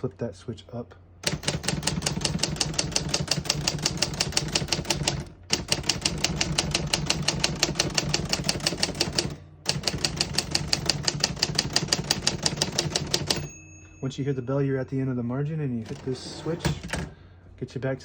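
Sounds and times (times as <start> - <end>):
manual typewriter typing: 1.2 - 13.5, 15.8 - 17.1.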